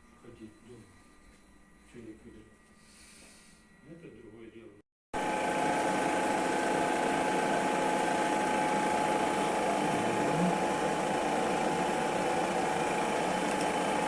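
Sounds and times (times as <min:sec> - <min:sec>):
metal lathe humming and whining: 0:05.2 - 0:14.0.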